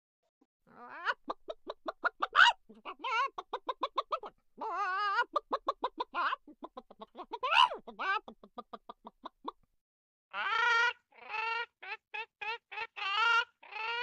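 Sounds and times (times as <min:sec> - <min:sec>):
chicken squawk: 0:00.7 - 0:09.5, 0:10.3 - 0:14.0
chicken clucking: 0:00.9 - 0:09.6.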